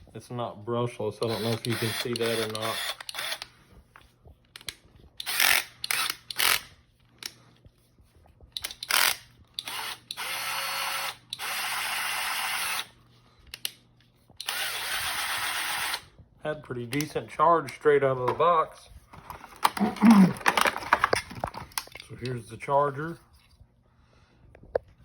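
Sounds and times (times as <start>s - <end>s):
cordless drill motor running: 1.2s - 3.5s, 5.2s - 6.7s, 8.9s - 12.9s, 14.4s - 16.1s.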